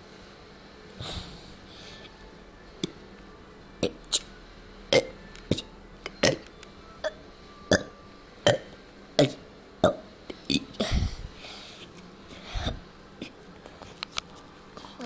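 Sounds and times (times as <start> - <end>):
person burping: 3.8 - 4.2, 4.9 - 5.6, 6.2 - 6.4, 7.0 - 11.2.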